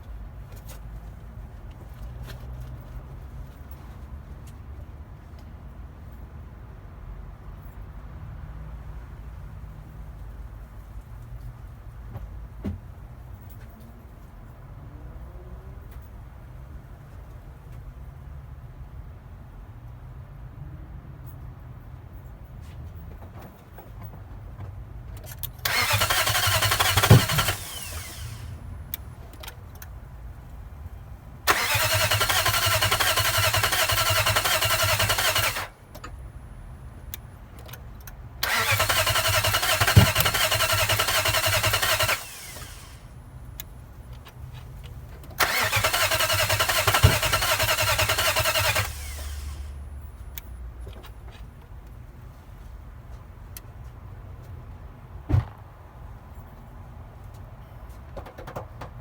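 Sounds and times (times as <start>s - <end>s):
engine cranking on starter: 25.6s - 28.6s, 31.5s - 36.0s, 38.4s - 43.1s, 45.3s - 49.8s.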